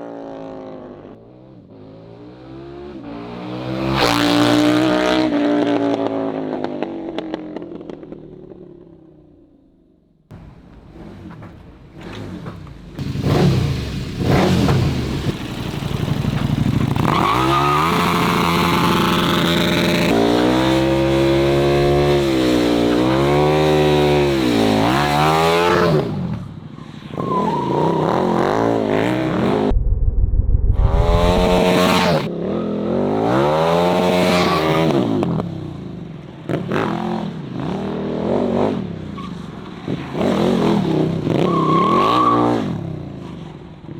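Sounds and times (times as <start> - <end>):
motorcycle engine revving: 12.0 - 26.2, 27.9 - 32.3.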